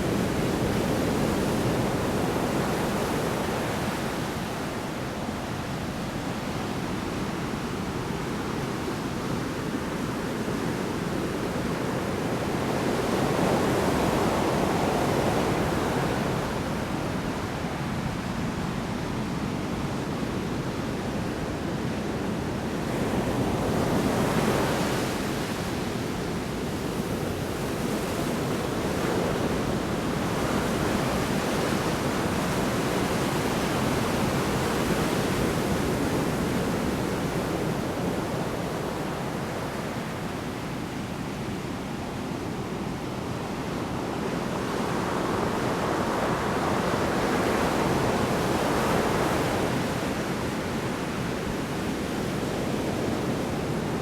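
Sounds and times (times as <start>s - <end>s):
storm waves crashing on shore: 43.0s - 54.0s.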